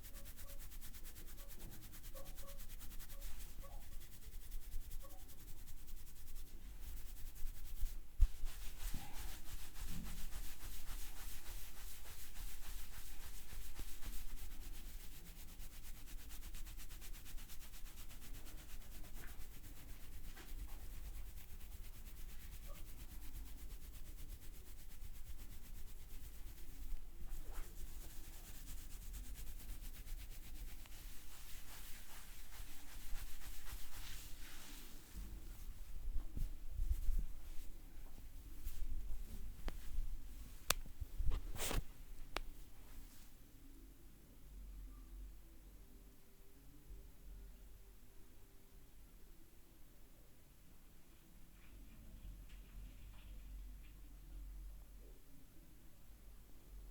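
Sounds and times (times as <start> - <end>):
hands rubbing hair and scalp: 0.0 - 43.3.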